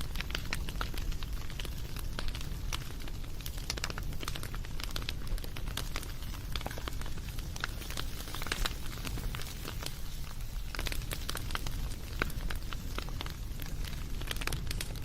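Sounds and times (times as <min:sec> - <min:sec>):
low rumble of burning: 0:00.0 - 0:15.0
wood fire crackling and popping: 0:00.0 - 0:15.0.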